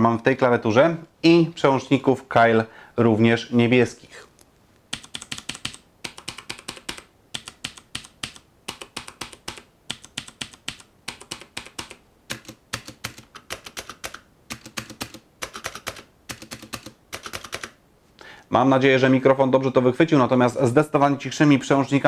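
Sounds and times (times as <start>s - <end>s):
mechanical keyboard typing: 4.9s - 17.8s.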